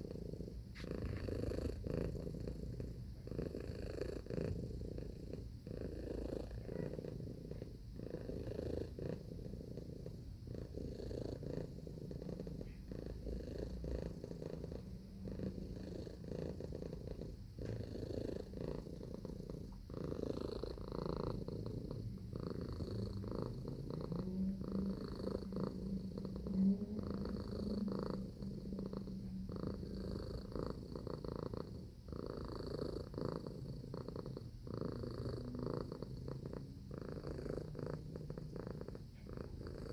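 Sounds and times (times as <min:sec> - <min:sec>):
cat purring: 0:00.0 - 0:39.9.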